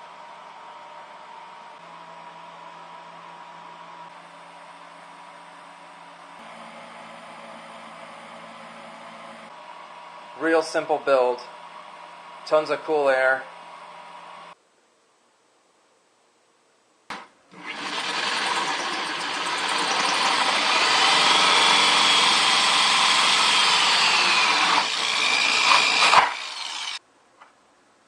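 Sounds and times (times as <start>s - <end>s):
power drill cutting plastic: 17.5s - 27.0s.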